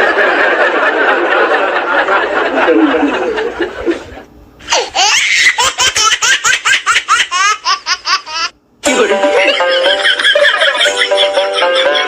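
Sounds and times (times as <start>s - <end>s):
high-pitched laughs: 2.3s - 8.5s, 9.3s - 12.0s.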